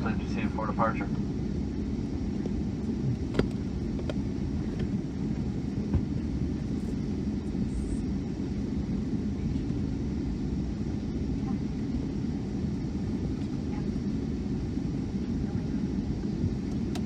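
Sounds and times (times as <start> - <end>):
airliner cabin engine rumble: 0.0 - 17.0.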